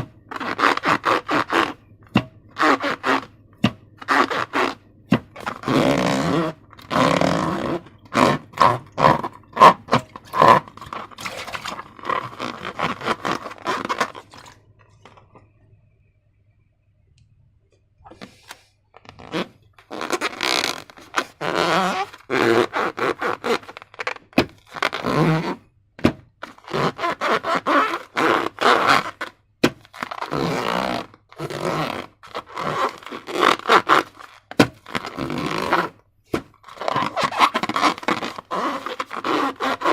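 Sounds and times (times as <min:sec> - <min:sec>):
slime scraping and rubbing: 0:00.0 - 0:01.8, 0:02.6 - 0:03.4, 0:04.0 - 0:14.6, 0:18.1 - 0:25.6, 0:26.4 - 0:39.9.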